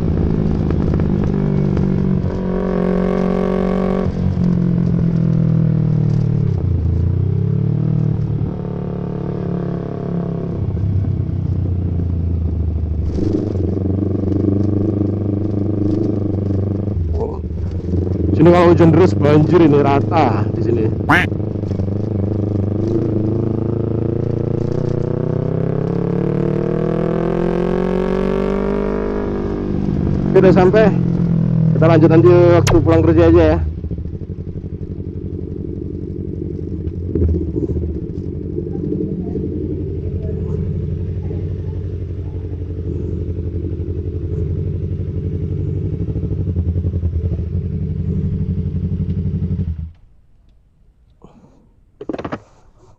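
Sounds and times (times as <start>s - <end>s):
motorcycle engine accelerating: 0.0s - 50.1s
motorcycle engine idling: 32.8s - 49.9s.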